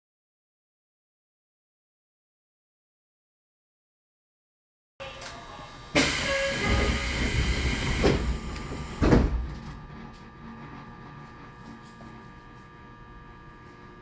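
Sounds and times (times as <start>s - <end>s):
train humming: 5.0s - 14.0s
air hiss of train doors: 5.2s - 9.5s
train doors thudding shut: 5.3s - 10.1s.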